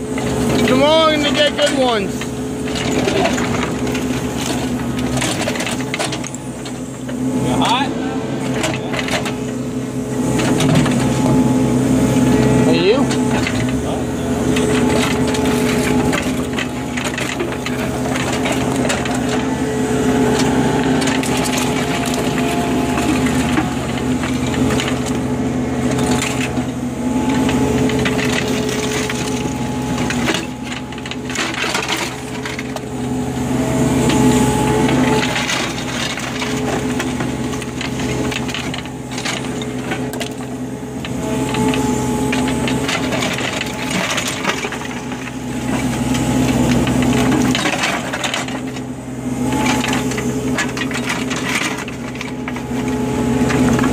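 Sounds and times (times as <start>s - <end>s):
digging machine engine running: 0.0s - 53.9s
bucket scraping dirt and stones: 12.7s - 53.9s.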